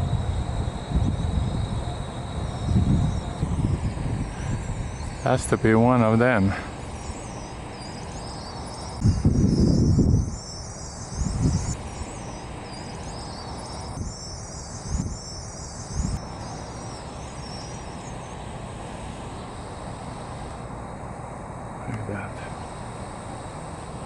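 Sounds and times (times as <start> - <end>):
wind buffeting microphone: 0.0 - 7.3, 9.0 - 12.2, 13.8 - 16.2
flock of birds chattering: 0.9 - 24.0.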